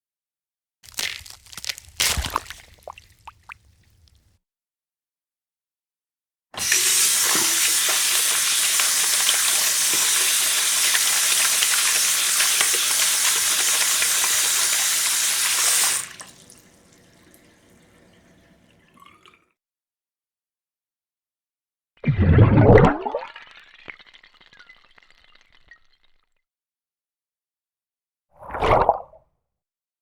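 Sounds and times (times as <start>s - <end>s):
water trickling and dripping: 2.2s - 4.2s, 10.8s - 19.4s.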